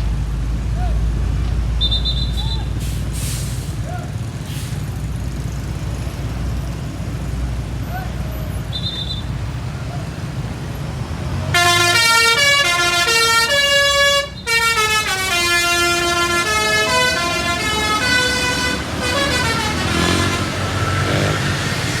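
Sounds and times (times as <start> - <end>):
engine and road rumble: 0.0 - 22.0
musical bus horn tune: 11.5 - 20.9.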